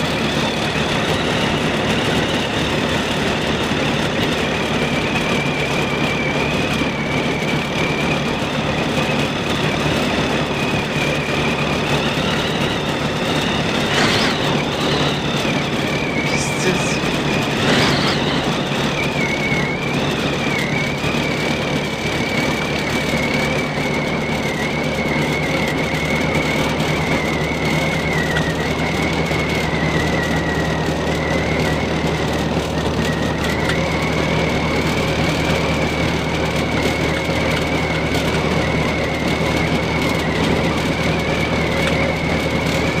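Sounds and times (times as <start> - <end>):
car engine and road noise: 0.0 - 43.0
thin high wind whistle: 11.3 - 23.0.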